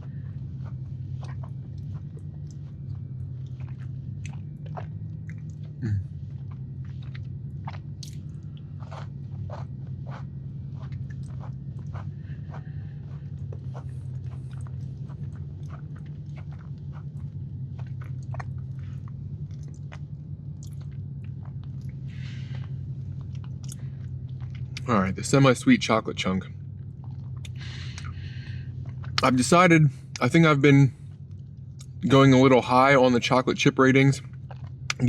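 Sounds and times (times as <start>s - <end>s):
person chewing cookie: 0.0s - 24.9s, 26.8s - 29.4s, 34.2s - 35.0s
low hum: 0.0s - 35.0s
mouth clicks and smacks: 3.4s - 9.0s.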